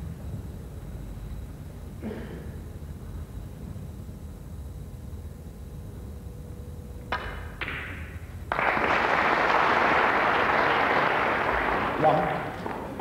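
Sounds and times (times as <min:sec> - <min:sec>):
snooker balls clicking: 0:07.0 - 0:08.5, 0:12.4 - 0:13.0
audience applause: 0:08.5 - 0:13.0.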